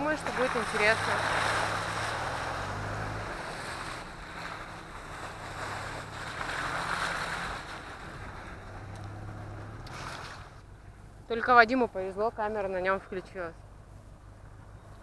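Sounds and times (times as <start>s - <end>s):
tyres rushing on dirt track: 0.0s - 10.7s
engine drone: 0.0s - 15.0s.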